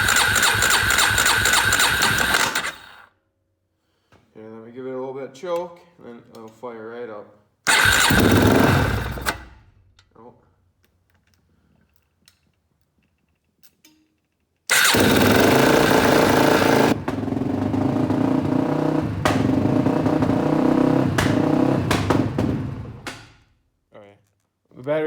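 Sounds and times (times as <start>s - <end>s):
engine running rough: 0.0s - 3.0s, 7.7s - 9.6s, 14.7s - 23.2s
engine sharp cracks: 0.0s - 3.0s, 7.7s - 9.7s, 14.7s - 23.4s.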